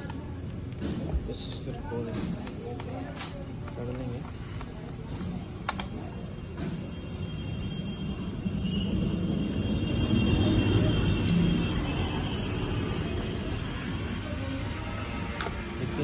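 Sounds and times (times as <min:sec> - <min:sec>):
sharp clicks of laptop parts: 0:02.1 - 0:06.0.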